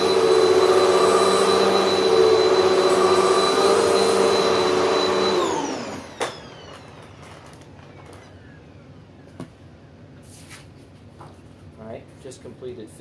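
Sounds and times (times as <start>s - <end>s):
vacuum cleaner spinning down: 0.0s - 8.5s.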